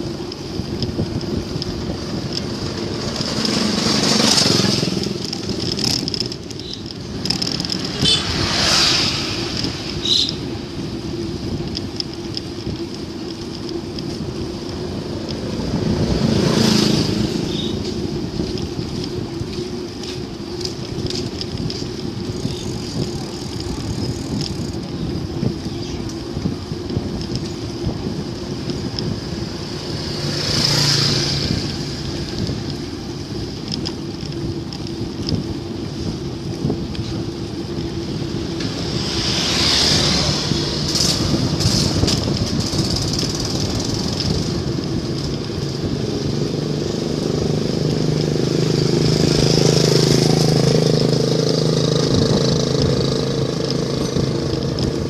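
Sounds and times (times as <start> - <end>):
engine hum: 0.0 - 55.0
wind and road noise: 0.0 - 55.0
vehicle swishing past: 7.8 - 10.3, 38.7 - 43.0.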